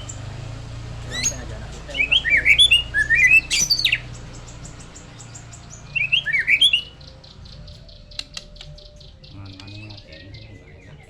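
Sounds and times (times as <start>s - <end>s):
bird whistling song: 0.0s - 0.3s, 1.0s - 11.0s
thin ticking bird notes: 0.0s - 11.0s.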